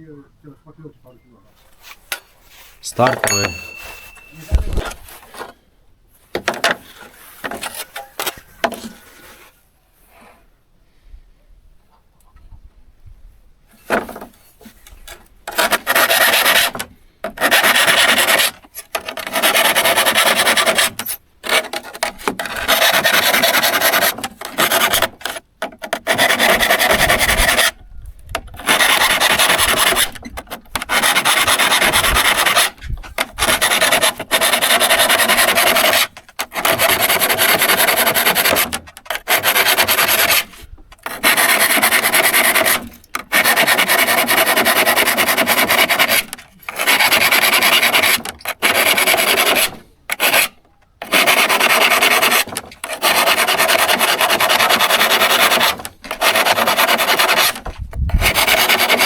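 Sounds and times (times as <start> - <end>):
file rasping on saw teeth: 15.5 - 27.7, 28.6 - 59.0.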